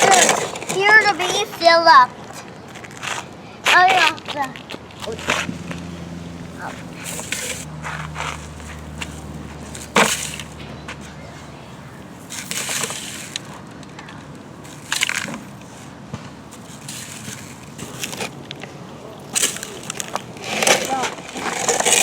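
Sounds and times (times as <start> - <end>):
low hum: 5.0 - 12.6
sand scraping and pouring: 6.6 - 13.6, 14.6 - 18.4, 19.4 - 22.0.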